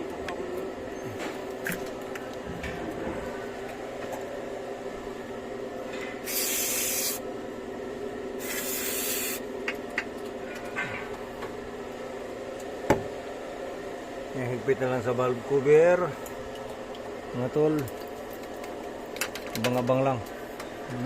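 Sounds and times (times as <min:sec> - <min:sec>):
aerosol spray bursts: 0:06.3 - 0:07.2, 0:08.4 - 0:09.4.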